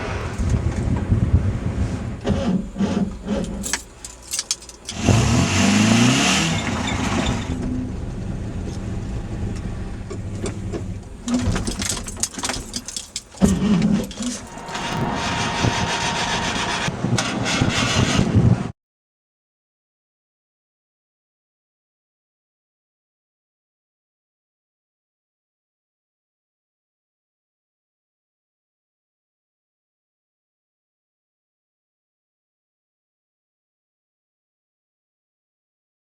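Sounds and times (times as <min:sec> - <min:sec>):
starter cranking engine: 0:02.2 - 0:18.1.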